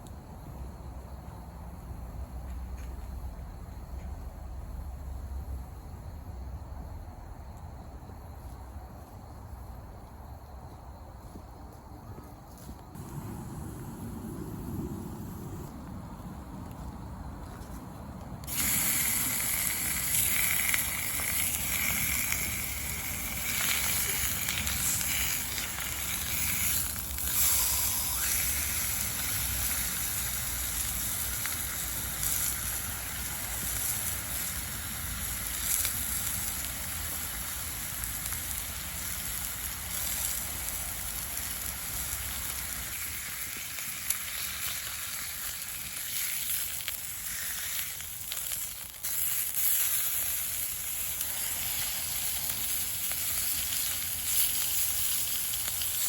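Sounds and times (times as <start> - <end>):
campfire crackles: 0.0 - 56.0
steak sizzling in a pan: 18.5 - 56.0.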